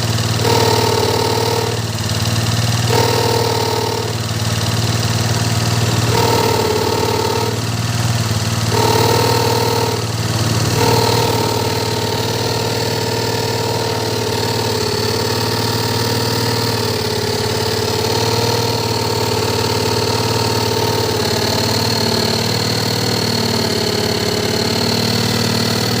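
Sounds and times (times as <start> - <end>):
scooter engine idling with whine: 0.0 - 26.0.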